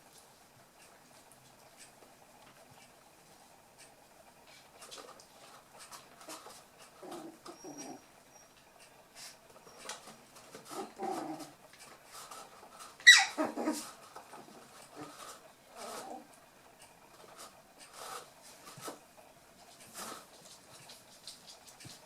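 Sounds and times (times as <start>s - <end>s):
puppies growling and whimpering: 6.3s - 8.6s, 10.6s - 11.6s, 13.1s - 16.3s
puppy yelping: 7.0s - 8.5s, 13.0s - 13.9s
light clicking and scuffling: 19.6s - 22.0s.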